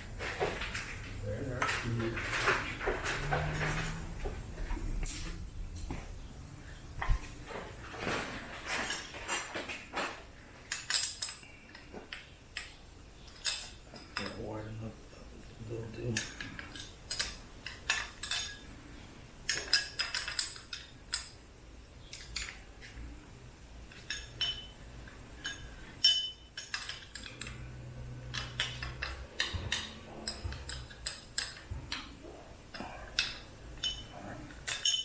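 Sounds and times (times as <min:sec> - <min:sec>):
metal hand tools clinking: 0:10.7 - 0:11.5, 0:13.3 - 0:14.4, 0:16.0 - 0:18.7, 0:19.5 - 0:21.4, 0:23.9 - 0:24.8, 0:25.4 - 0:35.0.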